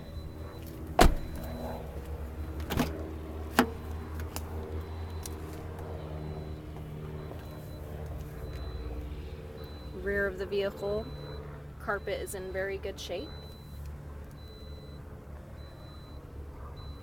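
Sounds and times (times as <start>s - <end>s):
steady low hum: 0.0s - 17.0s
knocks on a car: 1.0s - 1.4s.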